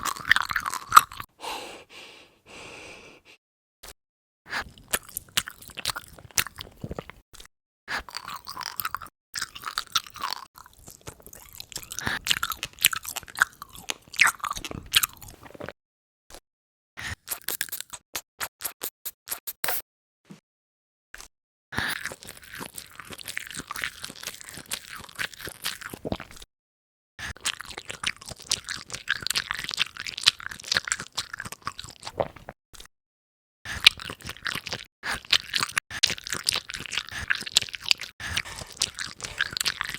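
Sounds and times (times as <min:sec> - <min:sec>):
wet crunching and chewing: 0:00.0 - 0:01.3, 0:04.6 - 0:15.8, 0:17.1 - 0:18.0, 0:21.8 - 0:26.5, 0:27.2 - 0:32.9, 0:33.7 - 0:39.9.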